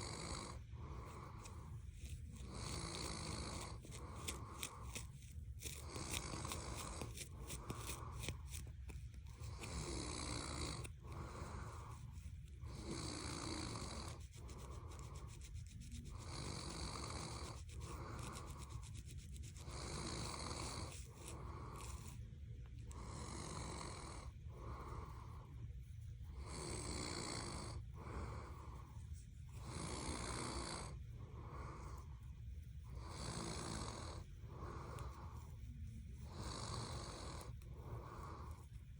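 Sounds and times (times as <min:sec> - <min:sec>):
person snoring: 0:00.0 - 0:01.6, 0:02.4 - 0:05.0, 0:05.7 - 0:08.1, 0:09.5 - 0:12.0, 0:12.6 - 0:14.2, 0:16.1 - 0:18.8, 0:19.6 - 0:22.1, 0:22.9 - 0:25.2, 0:26.4 - 0:28.7, 0:29.6 - 0:32.0, 0:33.0 - 0:35.4, 0:36.3 - 0:38.6
scalp scratching: 0:00.0 - 0:25.2, 0:26.4 - 0:38.9.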